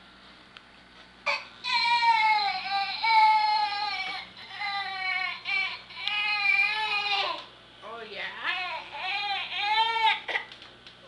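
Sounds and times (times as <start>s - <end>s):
baby crying high-pitched: 1.3s - 7.5s, 8.5s - 10.4s.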